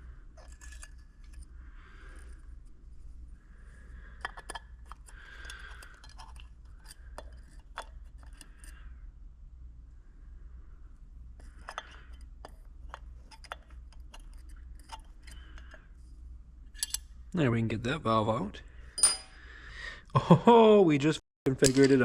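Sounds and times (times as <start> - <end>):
hand tools clicking on metal: 16.8 - 17.0.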